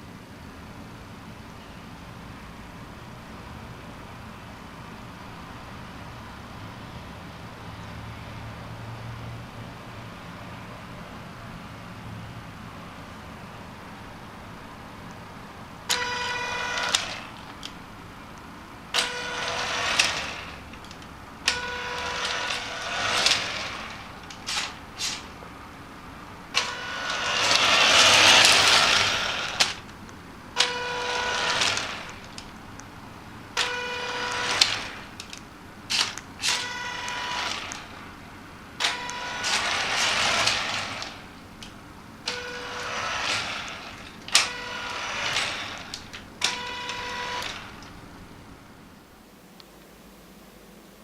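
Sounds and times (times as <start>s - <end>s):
gear noise: 15.0s - 48.9s
hissing motor run: 15.8s - 48.4s
toy truck electric motors whining: 15.8s - 48.5s.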